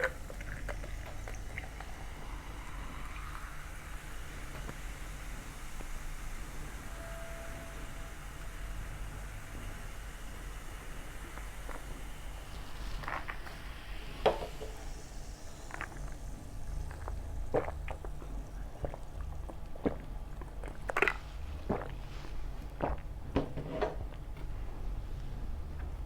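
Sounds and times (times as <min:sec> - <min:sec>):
steady low hum: 0:00.0 - 0:26.0
pizza crunching when chewed: 0:16.8 - 0:23.1.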